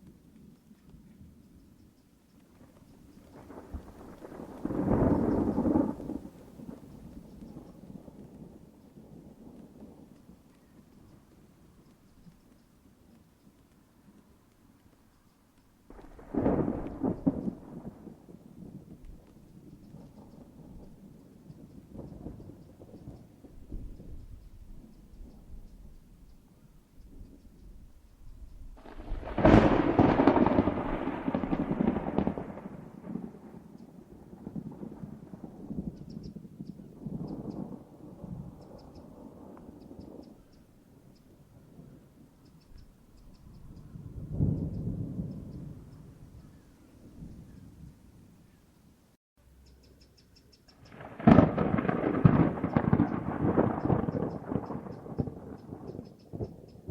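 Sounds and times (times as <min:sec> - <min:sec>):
thunderclap: 0:02.6 - 0:10.9, 0:15.9 - 0:26.0, 0:28.6 - 0:40.5, 0:43.6 - 0:48.4, 0:50.8 - 0:56.9.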